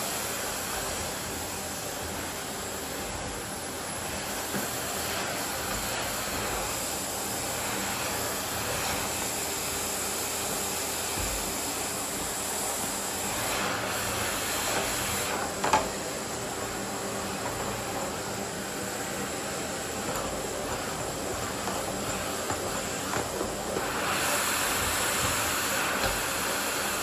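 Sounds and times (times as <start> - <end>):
vacuum cleaner running: 0.0 - 27.0.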